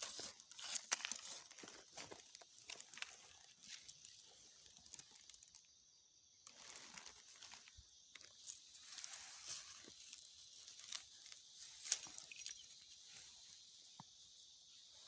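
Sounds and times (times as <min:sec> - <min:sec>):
dry leaves rustling: 0:06.4 - 0:13.6.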